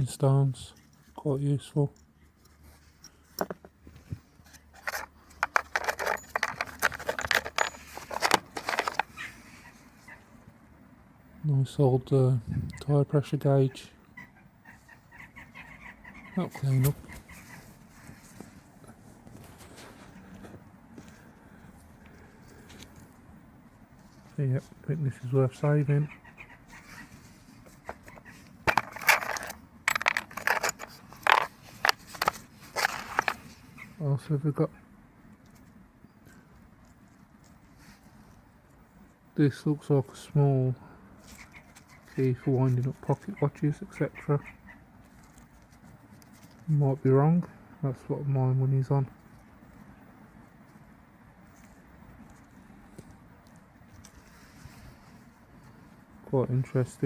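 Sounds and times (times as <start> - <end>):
hand tools clinking: 4.5 - 9.3, 27.7 - 33.5
short metallic rings: 5.6 - 9.2.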